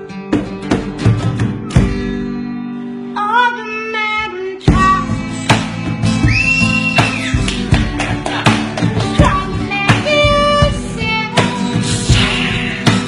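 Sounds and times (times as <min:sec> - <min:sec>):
drums: 0:00.0 - 0:02.4, 0:04.6 - 0:13.0
guitar: 0:00.0 - 0:13.0
person singing: 0:08.0 - 0:13.0.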